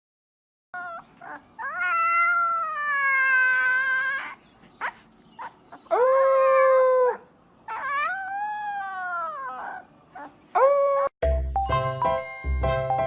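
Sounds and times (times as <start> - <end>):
dog howling: 0.8 - 4.4, 5.9 - 11.1
jingling music: 11.2 - 13.0.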